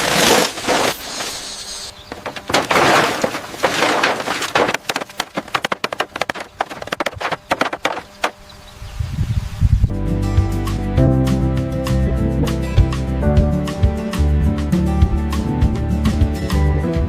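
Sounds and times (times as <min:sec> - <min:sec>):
sharp knocks: 0:02.1 - 0:08.4
rasping scraping on wood: 0:02.2 - 0:08.4.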